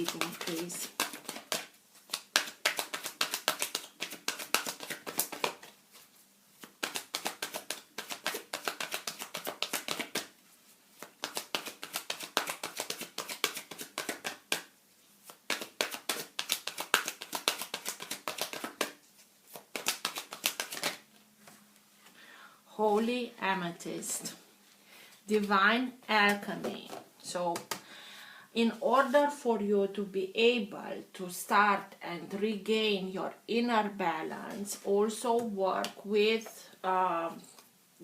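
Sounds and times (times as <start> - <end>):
cards being shuffled: 0.0 - 10.3, 10.9 - 21.6, 26.2 - 27.8.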